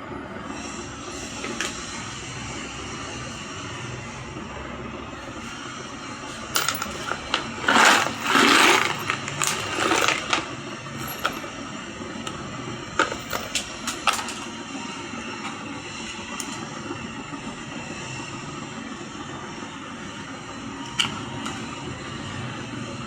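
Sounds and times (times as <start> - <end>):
steady background noise: 0.0 - 23.0
metal parts clinking and scraping: 1.2 - 1.8, 6.2 - 14.6, 16.4 - 16.7.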